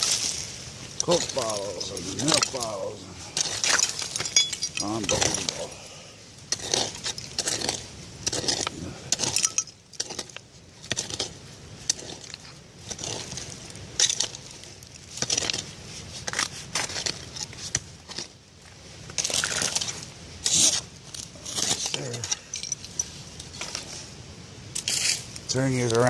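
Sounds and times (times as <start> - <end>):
digging crunching and scraping: 0.0 - 26.0
glass and metal clinks: 3.8 - 5.5, 9.3 - 9.8, 22.2 - 23.1.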